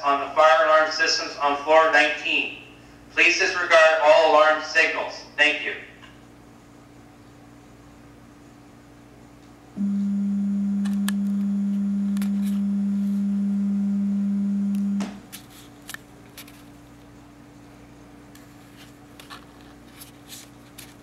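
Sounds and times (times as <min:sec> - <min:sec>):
fire alarm steady low tone: 0:09.8 - 0:15.0.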